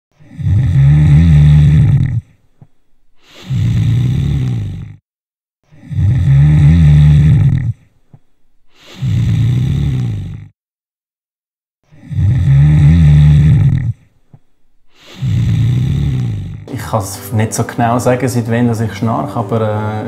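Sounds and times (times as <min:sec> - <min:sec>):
person snoring: 0:00.1 - 0:02.4, 0:03.2 - 0:05.1, 0:05.7 - 0:07.9, 0:08.7 - 0:10.6, 0:11.8 - 0:14.1, 0:14.9 - 0:17.3, 0:19.6 - 0:20.0.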